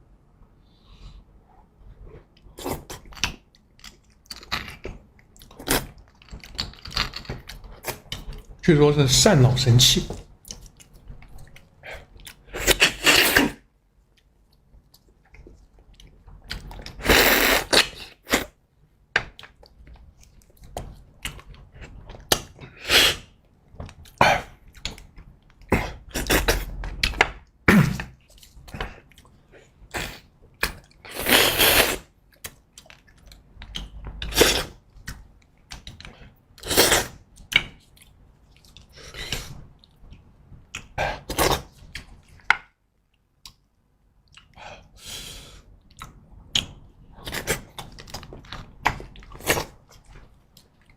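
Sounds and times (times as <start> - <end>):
slurping and chewing: 14.2 - 18.6, 28.0 - 42.4.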